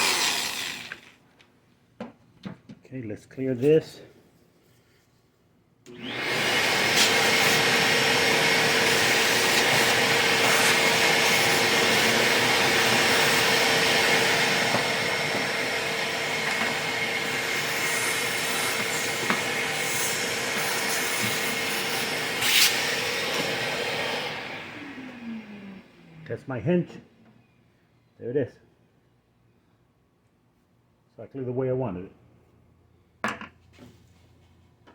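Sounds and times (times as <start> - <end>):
vacuum cleaner running: 0.0 - 1.0, 5.9 - 26.3.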